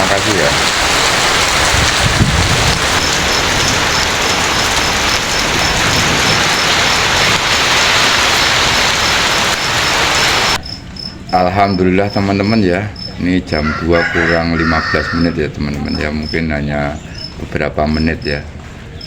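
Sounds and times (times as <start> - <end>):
heavy rain pouring: 0.0 - 19.0
wind rumble on microphone: 0.6 - 10.5.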